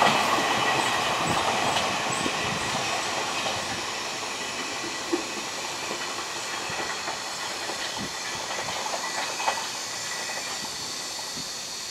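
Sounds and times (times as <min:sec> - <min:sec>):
freight wagons rolling on rails: 0:00.0 - 0:11.9.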